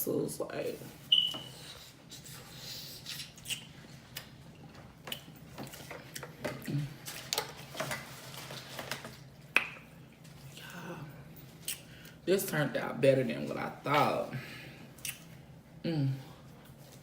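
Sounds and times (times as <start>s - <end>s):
lip smacking and chewing: 3.0s - 4.4s, 15.0s - 15.3s.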